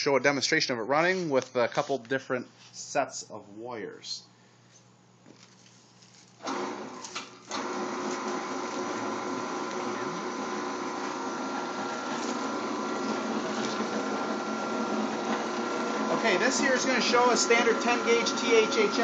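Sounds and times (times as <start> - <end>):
wire stripping machine humming: 6.3 - 19.0.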